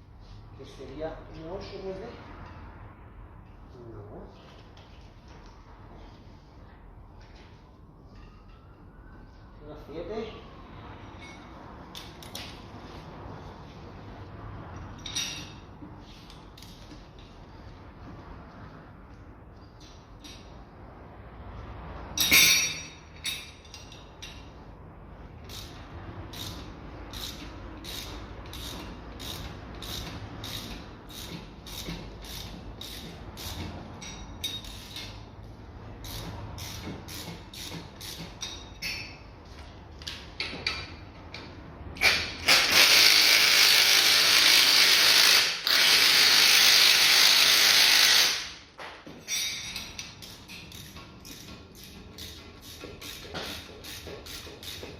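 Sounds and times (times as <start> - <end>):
hand ratchet clicking: 25.4 - 35.2, 36.0 - 38.6, 42.0 - 48.6, 49.9 - 54.9.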